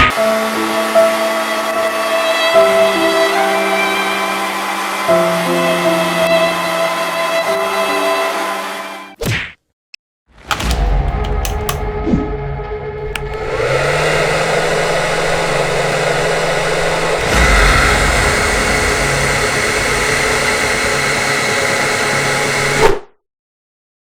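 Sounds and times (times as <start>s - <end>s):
hair dryer blowing: 0.1s - 5.8s, 10.5s - 11.8s, 13.0s - 23.0s.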